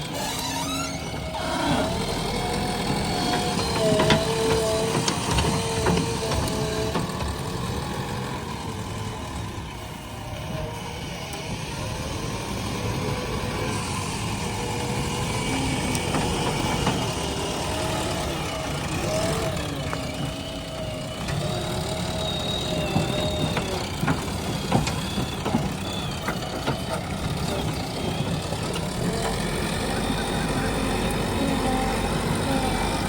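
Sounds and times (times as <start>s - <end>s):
diesel engine running: 0.0s - 33.0s.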